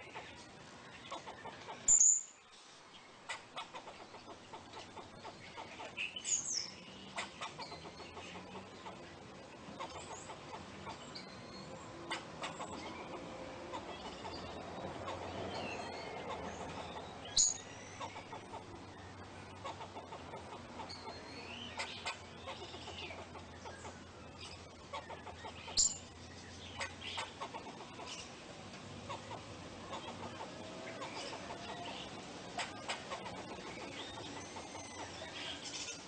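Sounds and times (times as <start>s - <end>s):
squirrel chuck calls: 1.0s - 2.2s, 3.2s - 36.0s
squirrel chirps: 1.1s - 2.4s.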